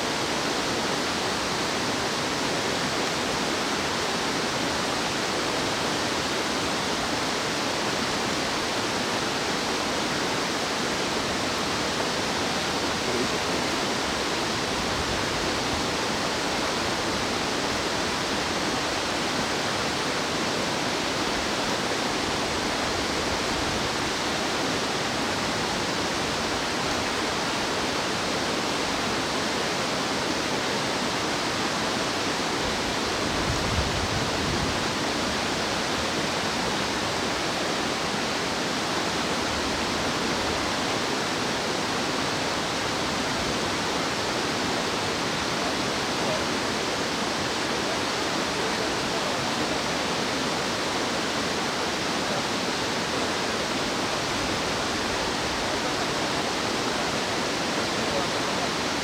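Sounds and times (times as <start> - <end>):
stream rushing: 0.0 - 59.0.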